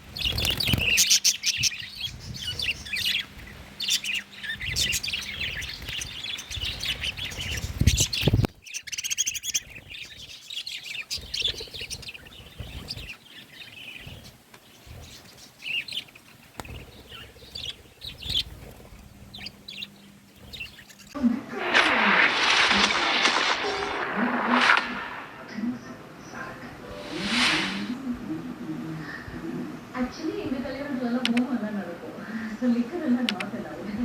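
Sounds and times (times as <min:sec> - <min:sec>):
budgies chirping: 0:00.0 - 0:21.2
low rumble: 0:21.4 - 0:28.7.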